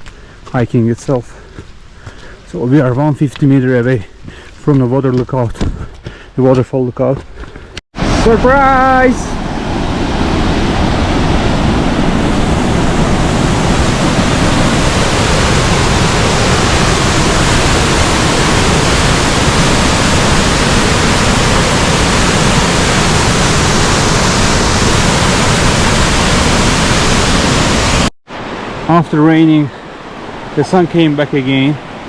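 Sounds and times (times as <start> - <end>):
waterfall rushing: 8.0 - 32.0.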